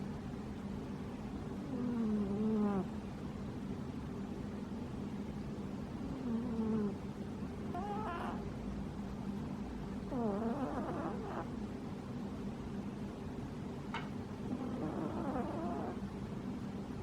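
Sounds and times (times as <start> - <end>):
cat snoring: 1.6 - 3.0, 6.0 - 7.0, 7.7 - 8.4, 10.1 - 11.6, 14.5 - 16.0.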